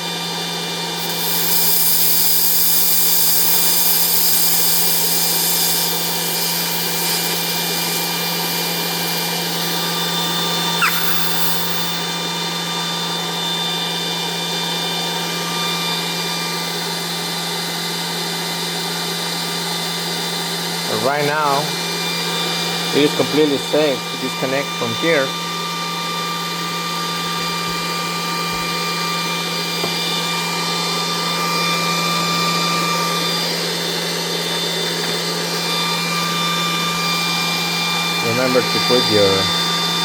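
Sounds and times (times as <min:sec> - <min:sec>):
high-pressure air hissing: 0:01.0 - 0:10.0, 0:10.8 - 0:12.2
short falling squeak: 0:10.7 - 0:12.2.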